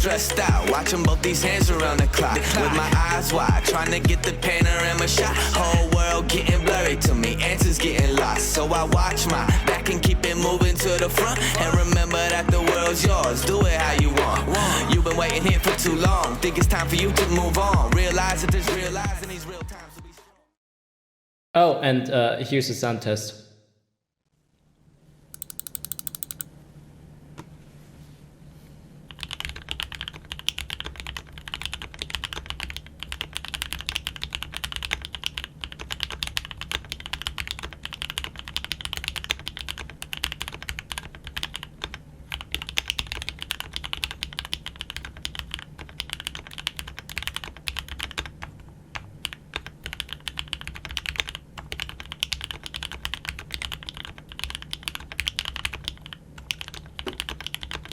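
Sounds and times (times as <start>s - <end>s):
mechanical keyboard typing: 25.4s - 26.5s, 29.1s - 57.9s.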